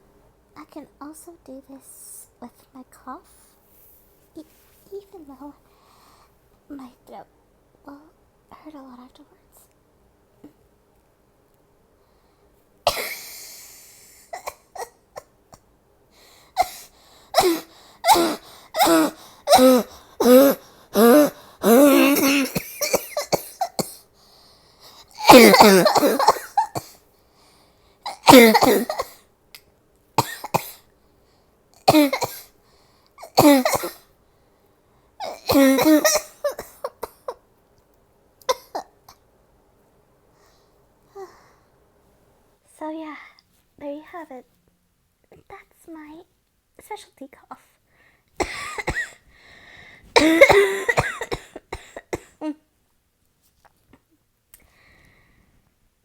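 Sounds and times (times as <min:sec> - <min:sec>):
woman coughing: 0:12.9 - 0:15.3, 0:16.6 - 0:24.0, 0:25.2 - 0:27.0, 0:28.1 - 0:29.2, 0:30.2 - 0:30.8, 0:31.8 - 0:32.5, 0:33.2 - 0:34.0, 0:35.2 - 0:37.4, 0:38.5 - 0:38.9, 0:48.4 - 0:49.2, 0:50.1 - 0:52.6.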